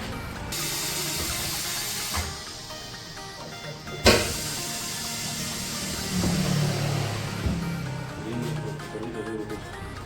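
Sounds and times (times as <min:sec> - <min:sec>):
steady air hiss: 0:00.4 - 0:08.2
loud blast of air: 0:00.5 - 0:02.8, 0:04.0 - 0:07.5.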